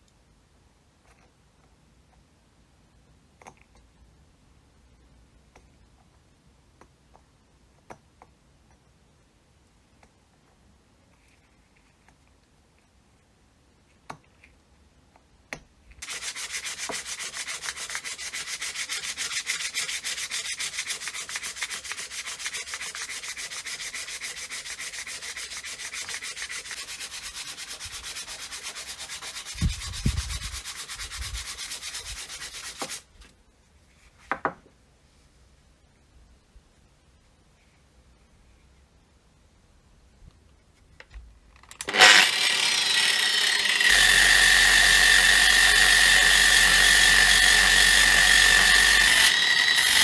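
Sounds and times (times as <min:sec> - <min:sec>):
sanding rubbing: 0:16.0 - 0:33.0, 0:42.8 - 0:50.0.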